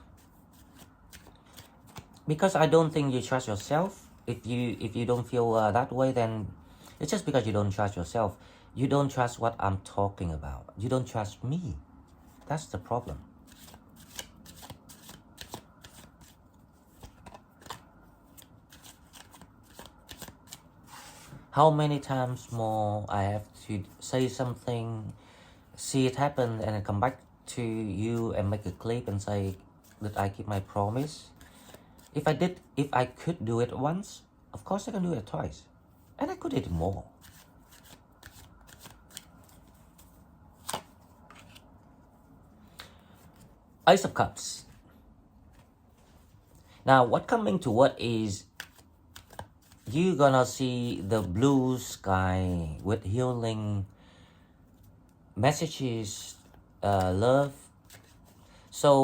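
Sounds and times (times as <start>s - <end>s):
cards being shuffled: 0.0s - 5.4s, 12.1s - 22.6s, 28.4s - 32.7s, 36.0s - 41.7s, 45.4s - 46.7s, 48.4s - 52.0s, 56.3s - 58.8s
cards clicking: 0.6s - 2.2s, 13.5s - 16.4s, 17.0s - 20.6s, 37.2s - 41.6s, 48.6s - 49.9s
card snapping: 37.2s - 39.3s, 40.6s - 41.6s.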